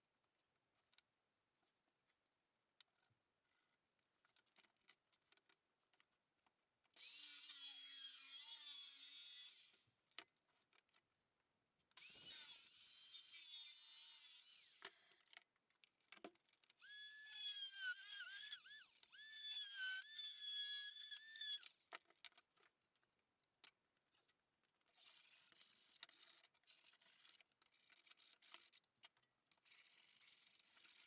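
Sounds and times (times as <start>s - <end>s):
power tool cutting plywood: 7.0s - 9.8s, 12.0s - 15.0s, 16.8s - 21.7s.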